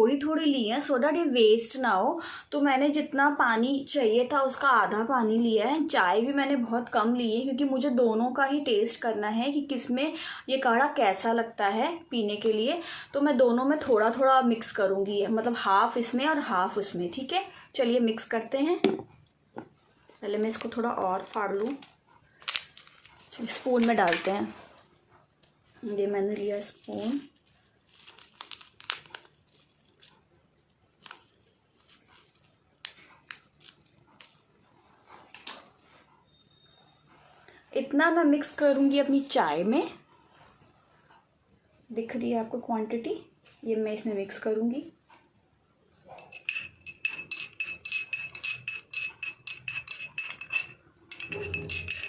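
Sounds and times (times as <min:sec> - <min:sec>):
sachet crinkling: 0:20.4 - 0:34.5
spoon clinking in a cup: 0:46.1 - 0:52.0.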